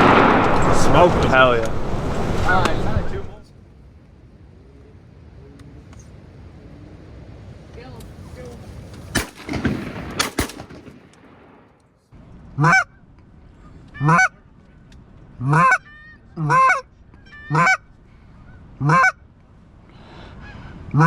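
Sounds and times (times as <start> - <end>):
goose honks: 12.6 - 13.0, 13.9 - 14.4, 15.4 - 17.9, 18.5 - 19.2, 20.4 - 21.0.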